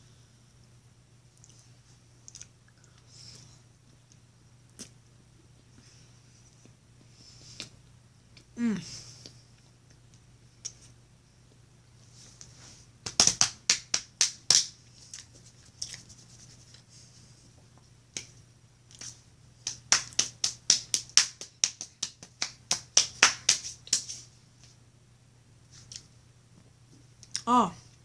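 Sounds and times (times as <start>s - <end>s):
chewing with lip smacking: 2.2s - 3.0s.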